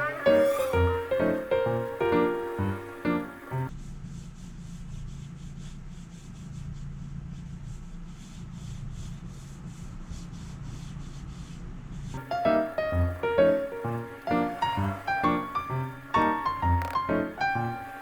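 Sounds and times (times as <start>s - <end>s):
brush rubbing on wooden wall: 3.6s - 18.0s.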